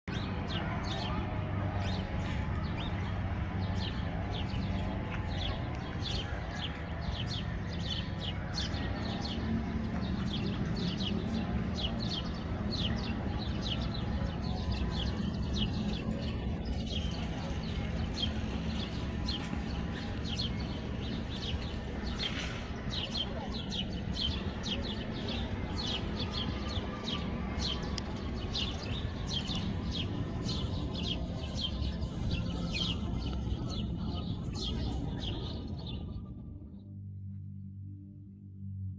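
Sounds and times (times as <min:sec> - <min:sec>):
sparrows chirping: 0:00.1 - 0:36.3
steady low rumble: 0:29.0 - 0:38.9.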